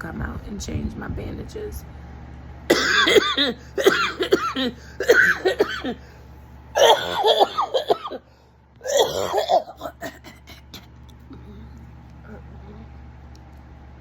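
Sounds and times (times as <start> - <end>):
woman coughing or laughing: 2.7 - 6.1, 6.8 - 8.2, 8.8 - 10.9.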